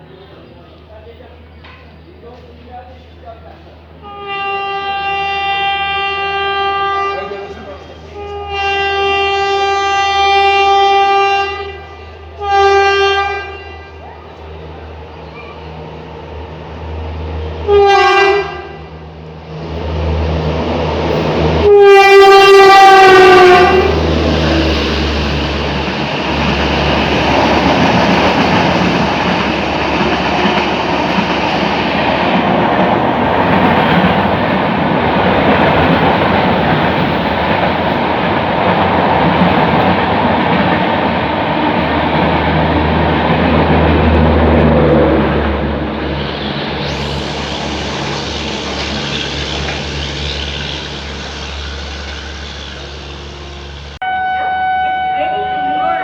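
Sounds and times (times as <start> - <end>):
train passing with clatter: 0.0 - 56.0
train horn blasts: 4.0 - 14.1, 17.6 - 18.9, 21.6 - 24.1, 52.8 - 56.0.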